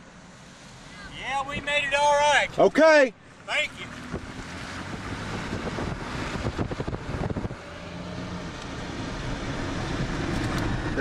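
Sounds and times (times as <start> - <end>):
vehicle engine and road noise: 0.0 - 11.0
wind buffeting the microphone: 4.0 - 7.9.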